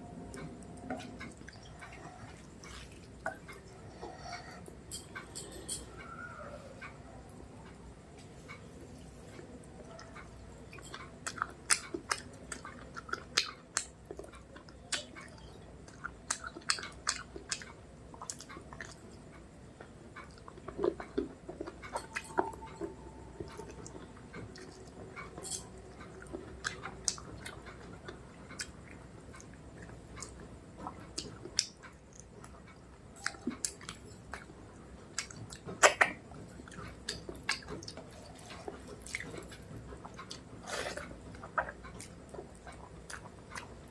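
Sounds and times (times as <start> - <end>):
person chewing with mouth smacks: 10.0 - 43.9.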